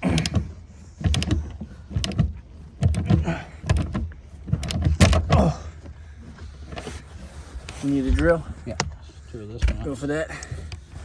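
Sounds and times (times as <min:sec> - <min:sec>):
ratchet wrench clicking: 0:04.6 - 0:04.8.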